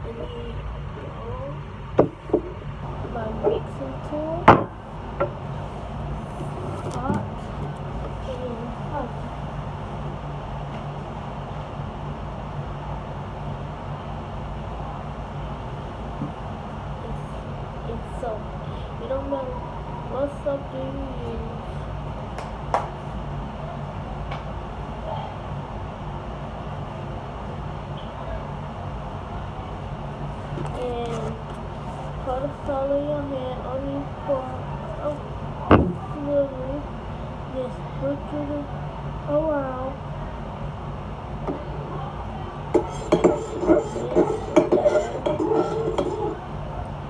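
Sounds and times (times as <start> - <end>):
steady low rumble: 0.0 - 27.9, 28.5 - 47.0
mixing tool scraping a bowl: 42.8 - 46.4.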